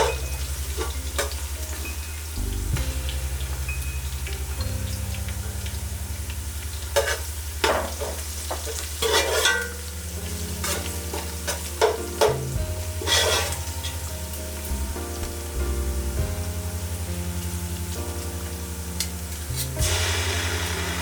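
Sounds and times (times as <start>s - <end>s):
food sizzling: 0.0s - 21.0s
spoon scraping a pan: 7.0s - 14.6s.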